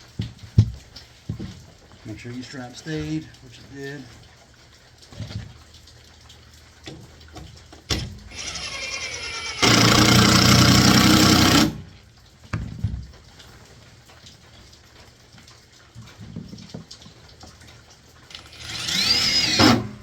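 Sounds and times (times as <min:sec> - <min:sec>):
power drill driving screw: 0:08.3 - 0:11.8, 0:18.3 - 0:20.0.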